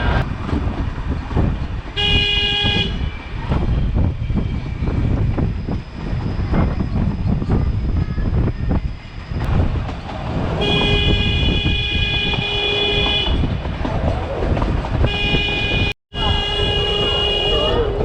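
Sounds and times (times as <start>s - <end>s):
rumble of moving train: 0.0s - 18.0s
locomotive horn blasts: 2.0s - 3.1s, 10.6s - 13.5s, 15.0s - 18.0s.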